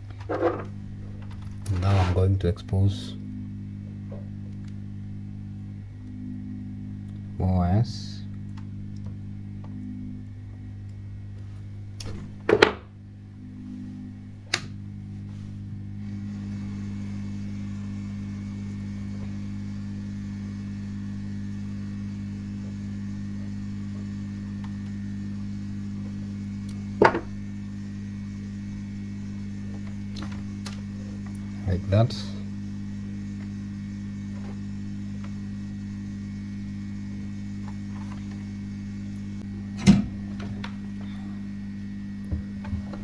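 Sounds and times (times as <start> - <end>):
electrical mains hum: 0.0 - 43.0
sharp clicks from wires: 14.5 - 14.8.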